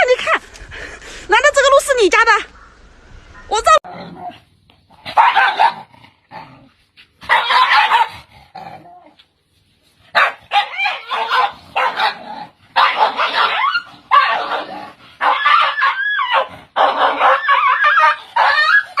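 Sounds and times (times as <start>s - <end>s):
dog barking and yipping: 5.0s - 5.9s, 7.2s - 8.3s, 10.1s - 19.0s.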